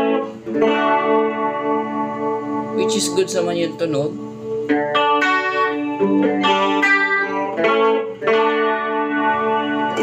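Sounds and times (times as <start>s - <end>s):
electric guitar with chorus effect: 0.0s - 10.0s.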